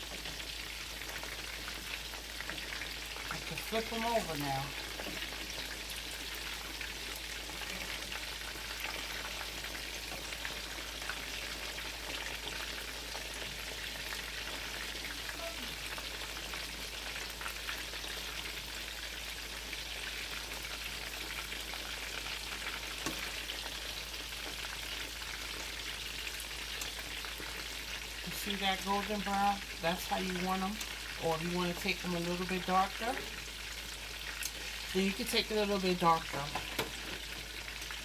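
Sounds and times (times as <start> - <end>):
food sizzling in hot oil: 0.0 - 38.0.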